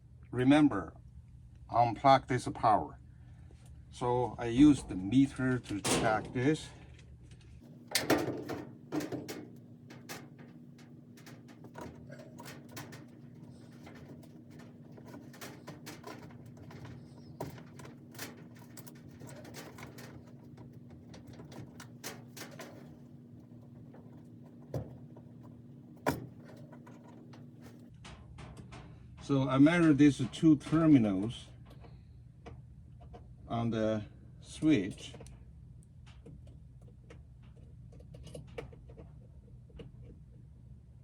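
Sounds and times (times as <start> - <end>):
steady low hum: 4.4 - 27.9.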